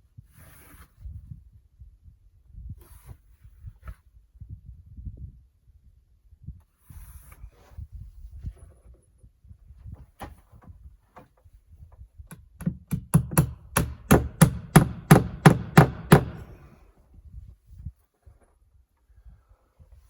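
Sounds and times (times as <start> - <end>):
hammer blows: 12.9 - 16.7.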